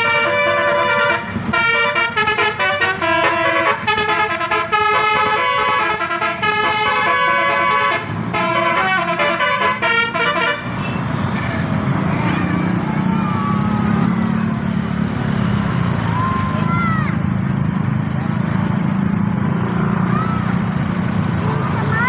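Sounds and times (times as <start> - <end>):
musical bus horn tune: 0.0 - 11.3.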